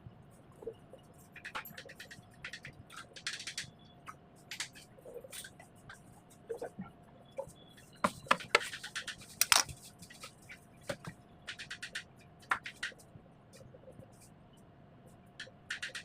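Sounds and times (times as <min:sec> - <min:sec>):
decorating tool scraping and clicking: 0:08.1 - 0:09.8.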